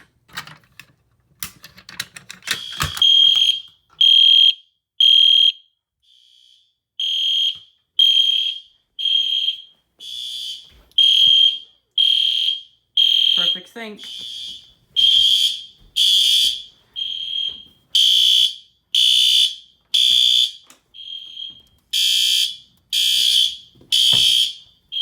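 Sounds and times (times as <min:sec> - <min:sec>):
fire alarm pull station clicking: 0:01.4 - 0:04.5, 0:17.2 - 0:25.0
alarm horn high beeps: 0:02.5 - 0:05.6, 0:06.2 - 0:25.0.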